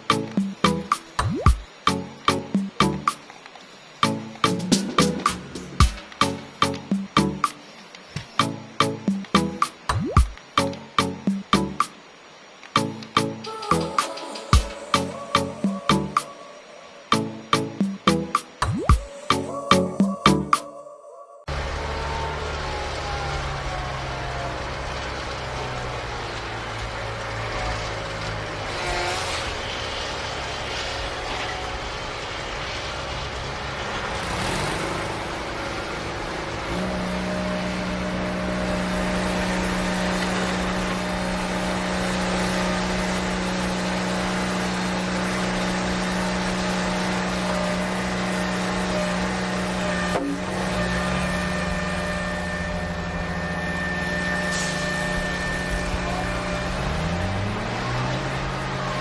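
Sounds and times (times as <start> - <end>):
toy vehicle motor humming: 36.5 - 59.0.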